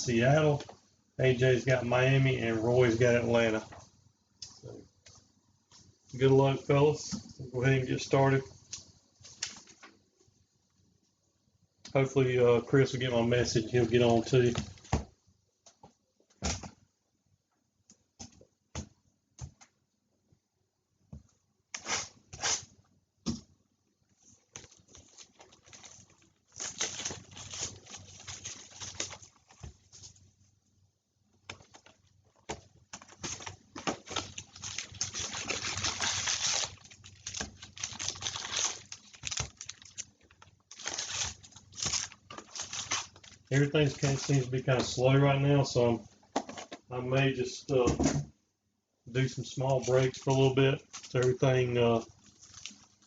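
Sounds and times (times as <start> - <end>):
foil wrappers crinkling and tearing: 24.4 - 30.2, 31.5 - 45.0, 49.4 - 53.0
card packs tapping and rustling: 24.5 - 30.2, 31.4 - 45.0.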